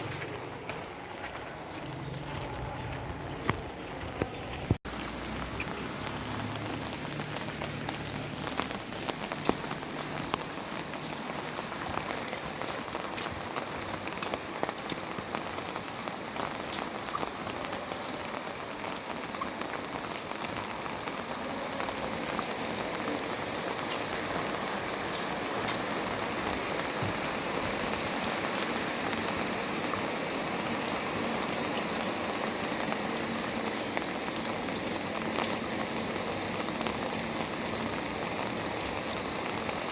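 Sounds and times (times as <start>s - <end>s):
heavy rain falling: 0.0s - 39.9s
sharp ticks of raindrops: 0.0s - 39.9s.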